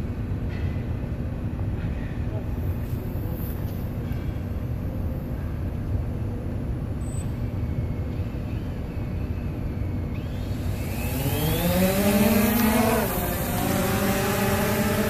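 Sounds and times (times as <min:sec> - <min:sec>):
motor rising in pitch: 0:10.1 - 0:15.0.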